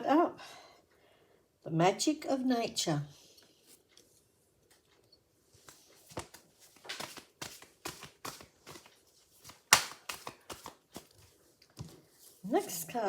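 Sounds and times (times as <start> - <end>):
cards being shuffled: 5.6 - 12.0.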